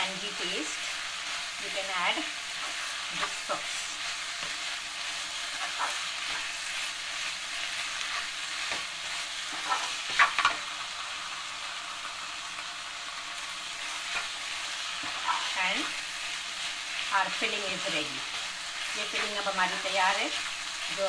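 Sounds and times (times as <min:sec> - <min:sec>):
chicken filling sizzling in a pan: 0:00.0 - 0:21.0
spatula scraping a pan: 0:02.0 - 0:10.6, 0:13.8 - 0:21.0.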